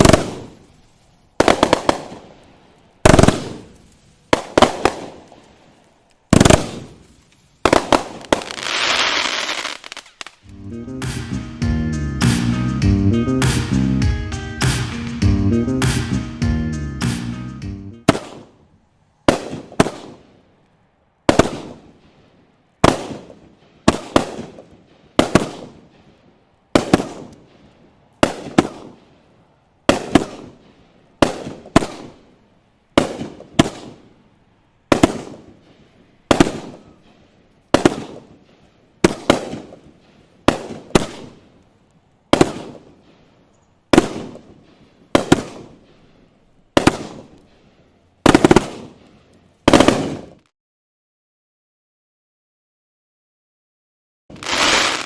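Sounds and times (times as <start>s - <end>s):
fireworks bangs: 0.0s - 11.5s, 18.0s - 18.6s, 19.2s - 20.4s, 21.2s - 22.2s, 22.8s - 26.1s, 26.7s - 29.1s, 29.9s - 32.3s, 33.0s - 34.2s, 34.9s - 41.4s, 42.3s - 43.2s, 43.9s - 46.0s, 46.7s - 47.5s, 48.2s - 50.4s, 54.3s - 55.0s.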